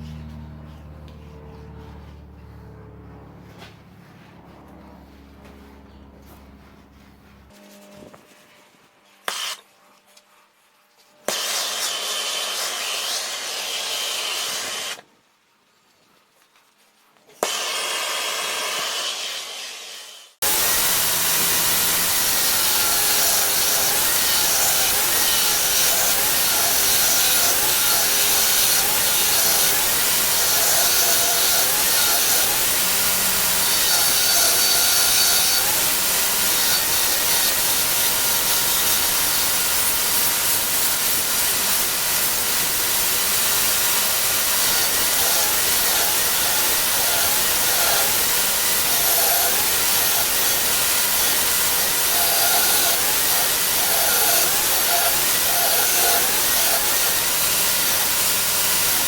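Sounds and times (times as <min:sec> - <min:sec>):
electric grinder on steel: 0:09.2 - 0:10.4, 0:11.2 - 0:15.1, 0:17.4 - 0:59.0.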